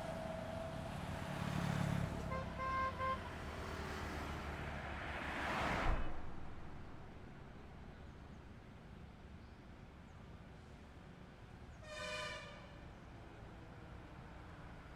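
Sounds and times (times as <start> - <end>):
highway traffic: 0.0 - 14.9
vehicle horn honking: 2.3 - 3.3, 11.8 - 12.7
vehicle passing close by: 3.4 - 7.8.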